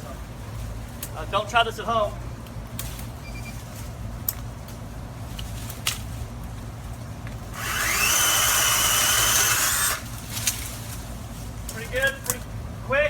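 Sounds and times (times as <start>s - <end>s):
electric chainsaw whining: 7.5s - 10.2s
chain cutting through wood: 7.6s - 10.0s.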